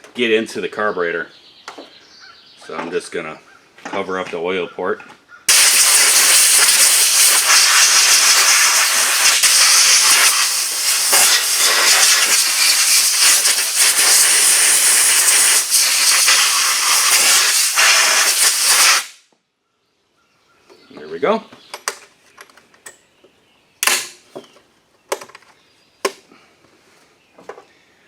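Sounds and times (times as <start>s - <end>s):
compressed air hissing from hose: 5.5s - 19.2s.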